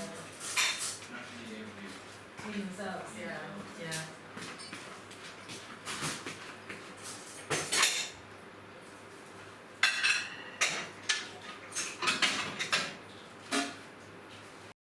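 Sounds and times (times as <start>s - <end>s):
dishes and cutlery clattering: 0.4s - 1.0s, 7.2s - 8.2s, 9.8s - 13.8s.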